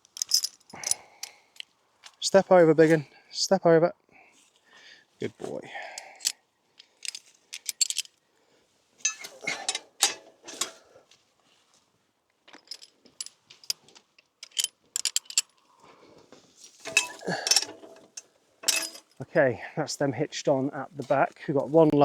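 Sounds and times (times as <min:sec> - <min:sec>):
harness chains clinking: 0:00.0 - 0:01.4, 0:06.0 - 0:08.2, 0:09.0 - 0:10.8, 0:12.5 - 0:13.8, 0:14.4 - 0:15.6, 0:16.6 - 0:19.2.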